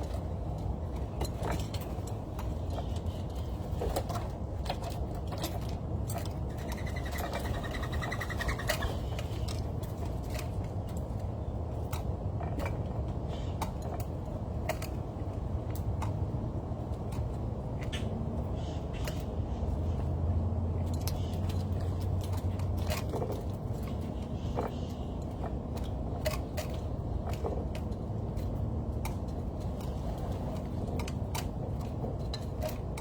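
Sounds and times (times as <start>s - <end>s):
small birds chirping: 6.5s - 9.6s.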